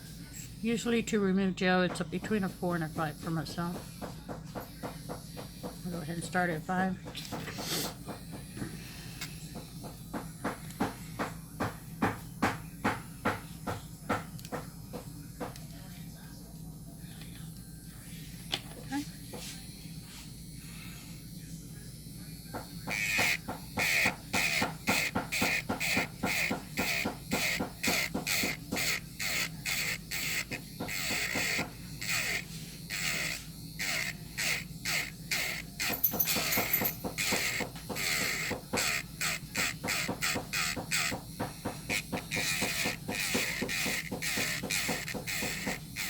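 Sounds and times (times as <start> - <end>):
electric nail drill running: 0.4 - 15.7, 18.1 - 46.0
drill bit scraping nail: 22.9 - 46.0.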